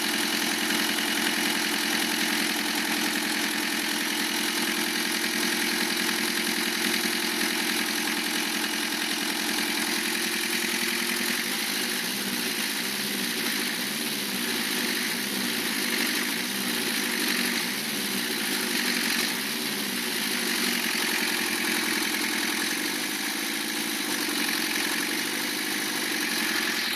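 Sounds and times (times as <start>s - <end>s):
diesel engine idling with knock: 0.0s - 26.9s.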